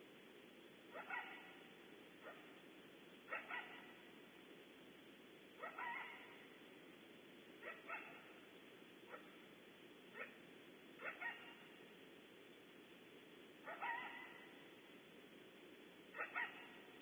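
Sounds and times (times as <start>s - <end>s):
microphone hiss: 0.0s - 17.0s
coyote barking: 0.9s - 2.6s, 3.2s - 4.1s, 5.6s - 6.6s, 7.6s - 8.4s, 9.0s - 9.4s, 10.1s - 10.4s, 11.0s - 11.8s, 13.6s - 14.8s, 16.1s - 17.0s.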